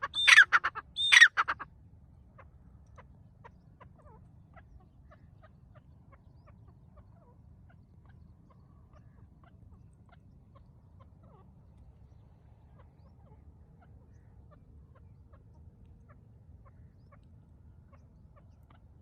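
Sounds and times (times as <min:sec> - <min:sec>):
partridge calling: 0:00.0 - 0:01.6.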